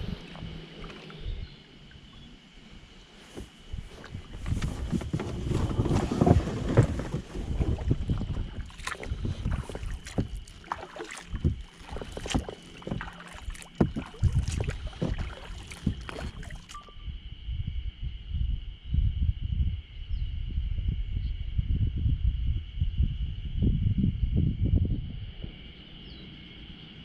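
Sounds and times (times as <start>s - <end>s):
paddle splashing in water: 3.3s - 16.9s.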